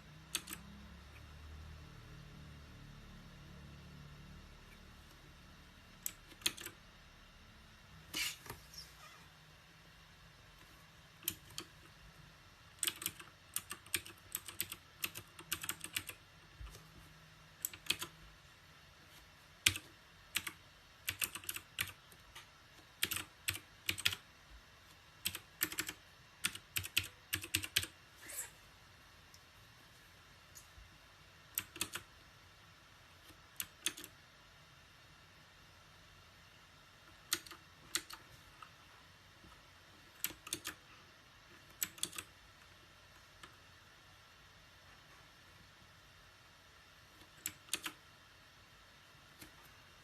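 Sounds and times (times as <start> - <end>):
mechanical keyboard typing: 0.2 - 0.8, 5.9 - 6.9, 11.1 - 12.0, 12.7 - 16.3, 17.6 - 18.2, 19.6 - 24.3, 25.2 - 28.0, 31.5 - 32.1, 33.2 - 34.2, 37.1 - 38.3, 40.0 - 40.8, 41.5 - 42.4, 47.2 - 48.0.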